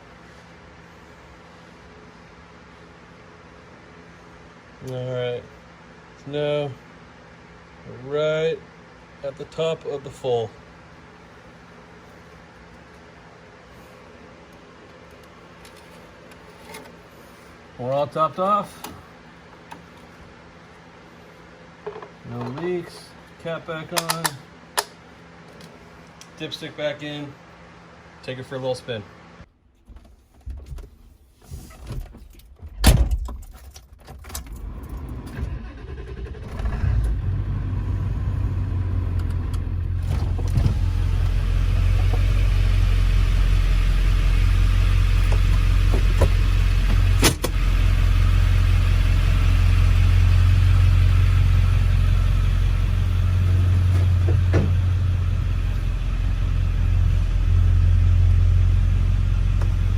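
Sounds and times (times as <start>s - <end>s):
diesel engine rumbling: 34.8s - 59.9s.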